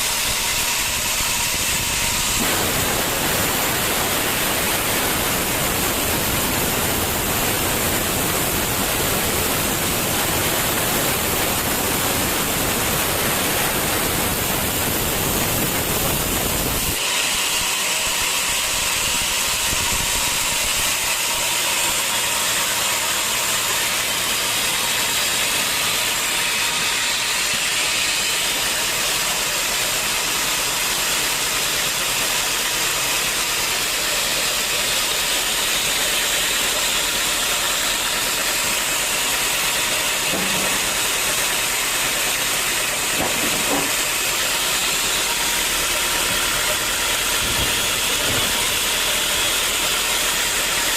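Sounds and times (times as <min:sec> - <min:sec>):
high hiss: 0:00.0 - 0:18.0
sawmill machinery running: 0:00.0 - 0:50.9.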